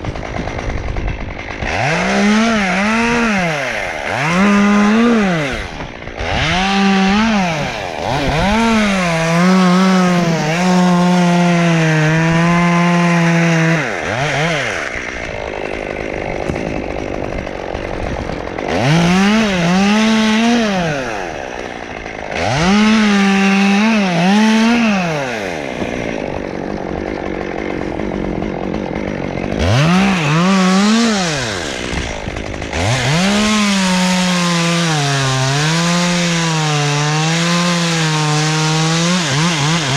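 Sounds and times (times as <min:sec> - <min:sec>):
chainsaw revving and idling: 0:00.0 - 0:39.9.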